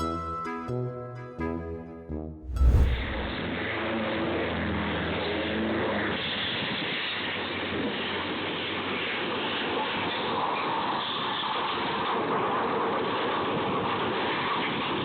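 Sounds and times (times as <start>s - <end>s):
loud low thump: 2.4s - 3.3s
aircraft rushing drone: 2.4s - 3.4s.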